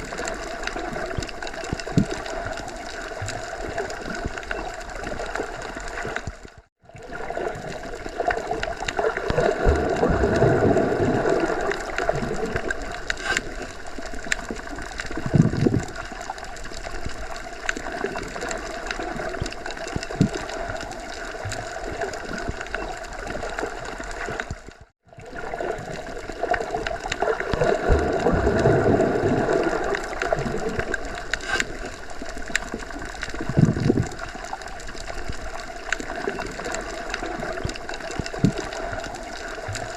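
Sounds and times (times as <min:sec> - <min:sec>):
underwater moving water: 0:00.0 - 0:39.9.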